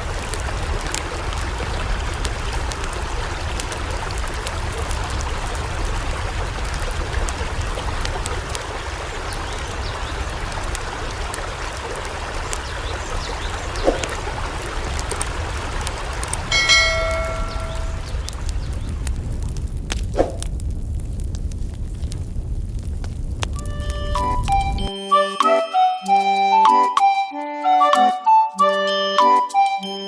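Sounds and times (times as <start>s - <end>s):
floodwater rushing: 0.0s - 19.5s.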